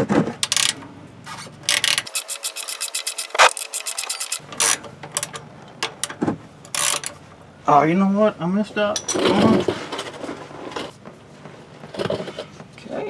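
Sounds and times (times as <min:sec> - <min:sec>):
ratchet wrench clicking: 0:01.7 - 0:05.4, 0:06.7 - 0:07.2.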